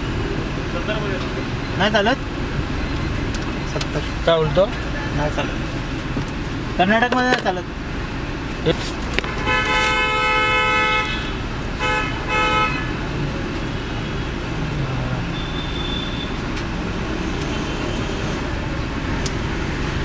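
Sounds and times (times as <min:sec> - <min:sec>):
idling engines and traffic: 0:00.0 - 0:20.0
vehicle horn honking: 0:09.3 - 0:13.0, 0:15.3 - 0:16.4.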